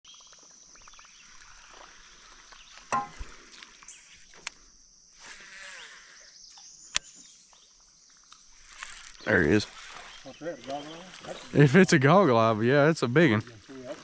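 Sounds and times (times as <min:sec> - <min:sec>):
insects droning: 0:00.0 - 0:14.0.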